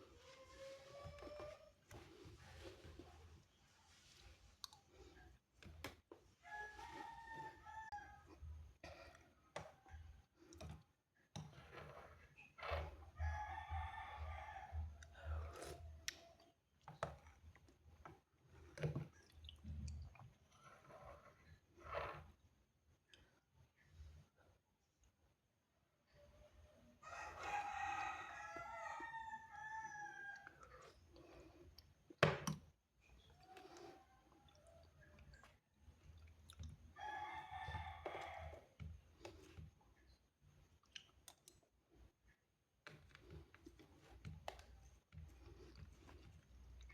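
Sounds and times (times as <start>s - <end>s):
rooster crowing: 6.4s - 8.2s, 13.2s - 14.9s, 27.0s - 30.5s, 37.0s - 38.7s.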